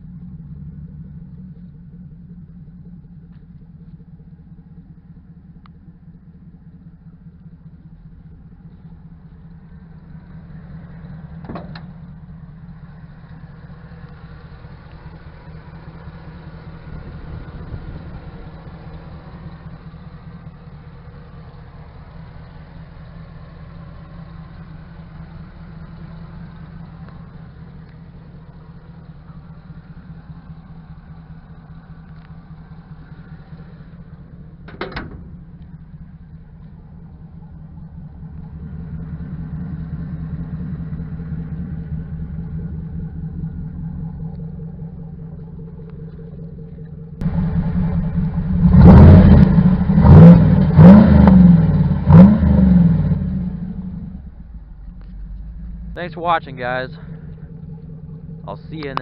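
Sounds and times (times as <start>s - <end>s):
truck engine running: 0.0s - 59.0s.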